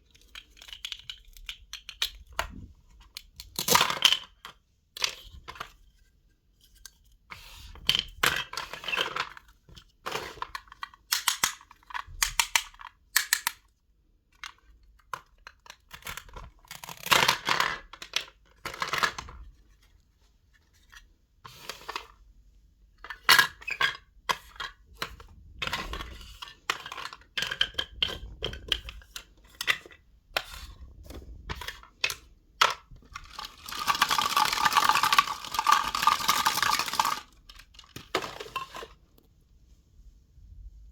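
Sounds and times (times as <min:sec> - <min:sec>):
toy pieces clicking and clinking: 0:00.1 - 0:02.4, 0:10.2 - 0:13.6, 0:32.0 - 0:38.8.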